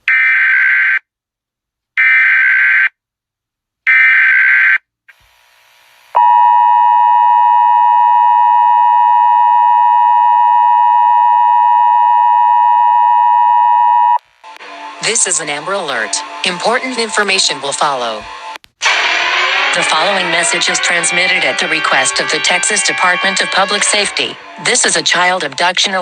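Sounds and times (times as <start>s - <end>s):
loud steady alert tone: 6.2s - 17.8s, 18.8s - 25.4s.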